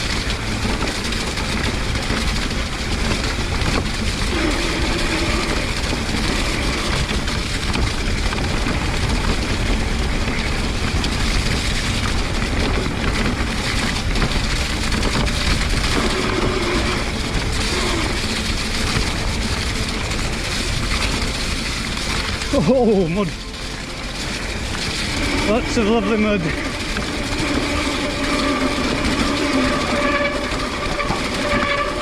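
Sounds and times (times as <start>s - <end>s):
bike tyre noise on mud: 0.0s - 32.0s
wind rushing: 5.6s - 22.4s.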